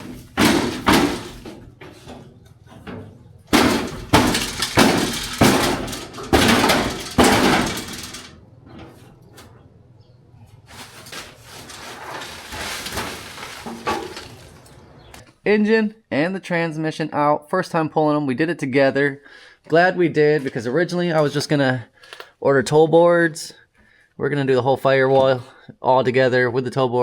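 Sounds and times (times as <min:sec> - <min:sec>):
loud ringing bangs and clatters: 0:00.0 - 0:09.2.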